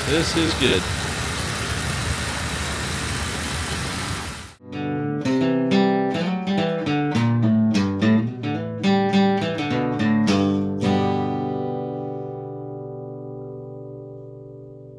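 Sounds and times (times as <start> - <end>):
acoustic guitar music: 4.6 - 14.9.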